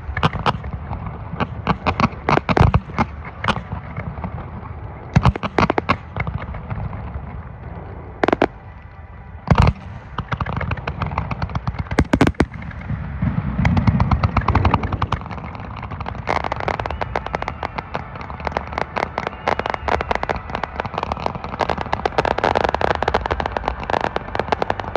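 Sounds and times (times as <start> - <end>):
fireworks crackling pops: 0.0 - 7.6, 8.2 - 24.9
fireworks bangs: 8.2 - 8.7, 9.5 - 24.9.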